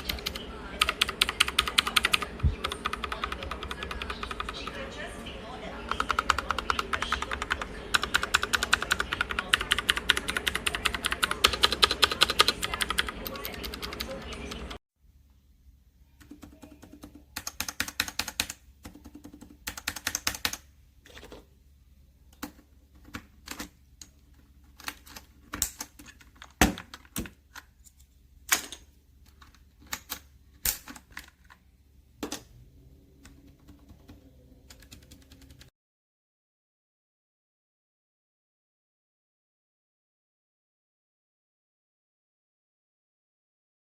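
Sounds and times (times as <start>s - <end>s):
typing on mechanical keyboard: 0.0s - 4.8s, 5.9s - 14.8s, 16.2s - 21.2s, 22.4s - 23.8s, 24.6s - 27.7s, 29.3s - 31.6s, 33.2s - 35.7s.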